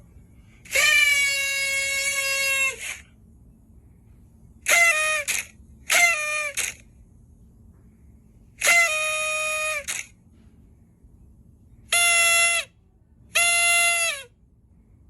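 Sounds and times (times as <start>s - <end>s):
party horn blower blasts: 0.6s - 3.1s, 4.6s - 6.8s, 8.6s - 10.1s, 11.9s - 14.4s.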